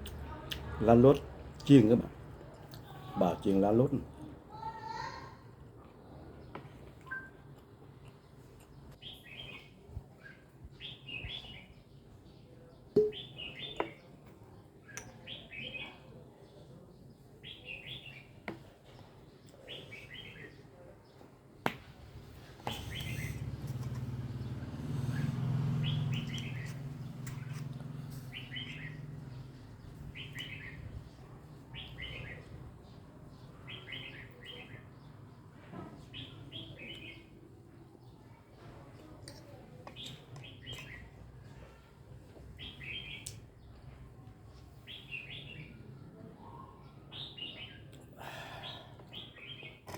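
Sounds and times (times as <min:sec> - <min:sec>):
bird chirping: 0:12.9 - 0:14.1, 0:22.6 - 0:35.1.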